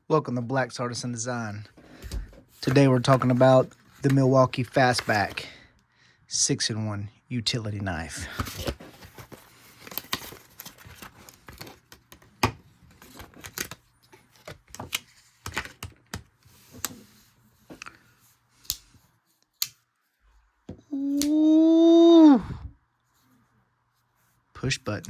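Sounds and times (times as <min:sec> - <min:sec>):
packaging clicks and crinkles: 0:08.3 - 0:16.4.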